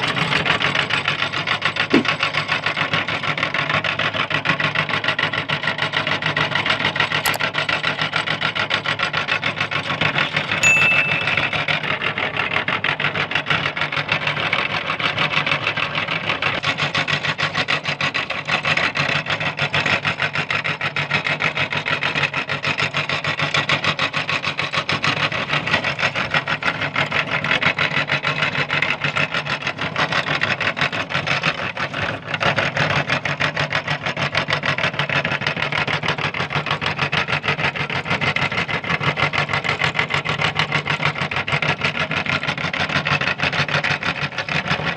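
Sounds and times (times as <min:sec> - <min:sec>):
meat grinder crunching candy: 0:12.8 - 0:44.9.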